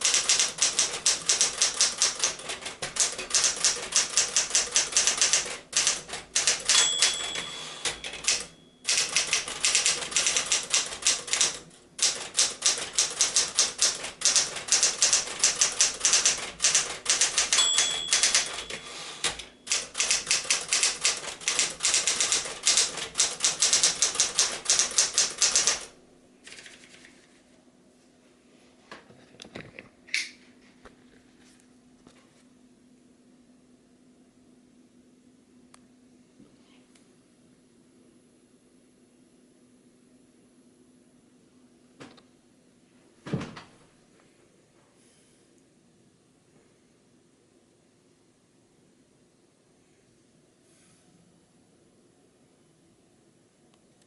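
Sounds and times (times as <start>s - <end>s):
typewriter key strikes: 0.0s - 25.9s
typewriter line-end bell: 0.0s - 25.9s.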